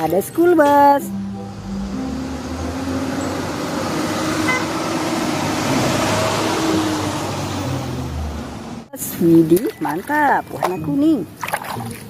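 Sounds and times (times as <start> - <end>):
motor vehicle running: 0.0 - 12.0
short horn-like tone: 4.4 - 4.8.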